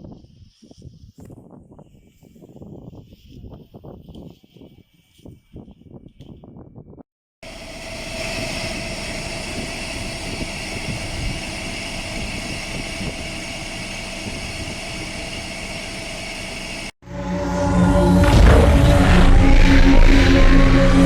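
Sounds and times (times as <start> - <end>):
large engine whining and rumbling: 7.4 - 21.0.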